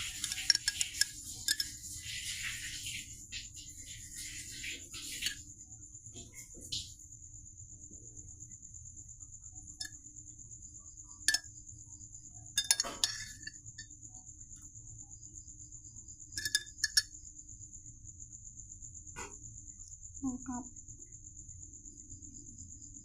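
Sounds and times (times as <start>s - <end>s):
kitchenware clinking: 0.0s - 1.7s, 12.6s - 13.5s, 16.4s - 17.0s.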